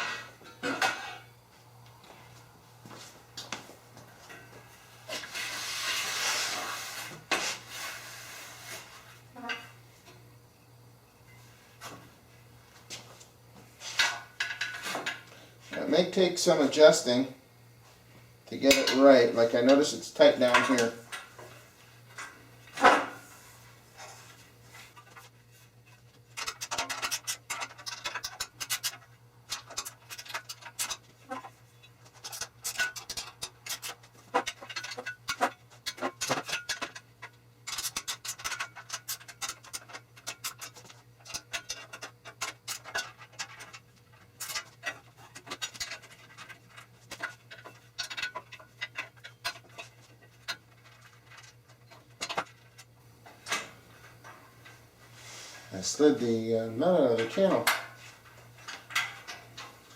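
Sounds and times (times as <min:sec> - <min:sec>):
steady low hum: 0:00.0 - 0:59.9
metal parts clicking and scraping: 0:24.9 - 0:54.8, 0:56.9 - 0:59.9.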